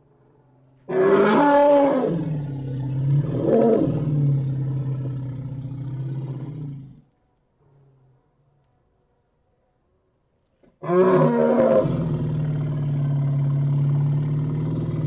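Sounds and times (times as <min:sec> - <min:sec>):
elephant roar: 0:10.8 - 0:15.0.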